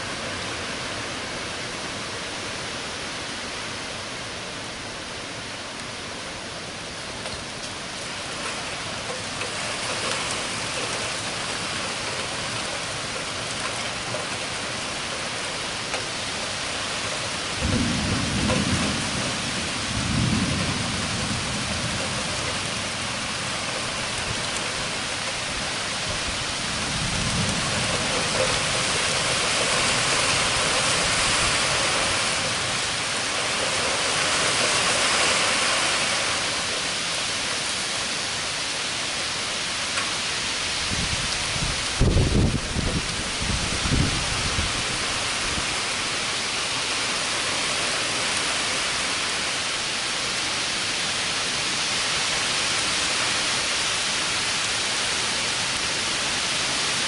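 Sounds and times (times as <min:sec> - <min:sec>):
steady heavy rain: 0:00.0 - 0:57.0
thunder rumble: 0:17.0 - 0:34.9, 0:40.8 - 0:45.8.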